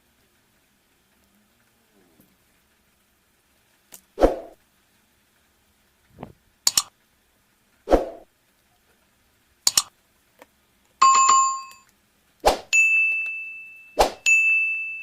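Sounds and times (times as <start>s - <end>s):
small metal object ringing: 11.0s - 11.9s, 12.7s - 15.0s.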